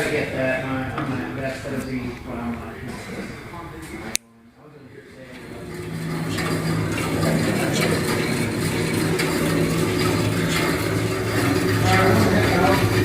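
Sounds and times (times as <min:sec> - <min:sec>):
motor humming: 0:05.2 - 0:13.0.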